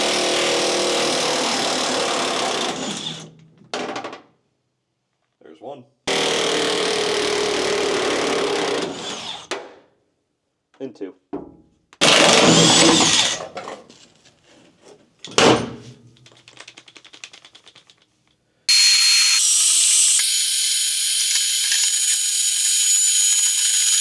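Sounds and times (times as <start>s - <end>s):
fast ratchet clicks: 18.7s - 24.0s
loud steady hiss: 18.7s - 24.0s
thin high whistle: 18.7s - 24.0s.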